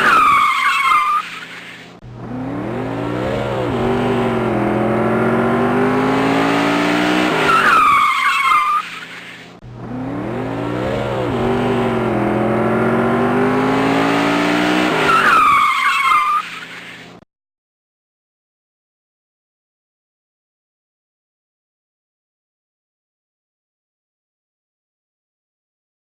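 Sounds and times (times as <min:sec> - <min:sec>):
tire squeal: 0:00.0 - 0:02.0, 0:02.8 - 0:17.2
race car engine running hard: 0:02.0 - 0:07.5, 0:09.6 - 0:15.1.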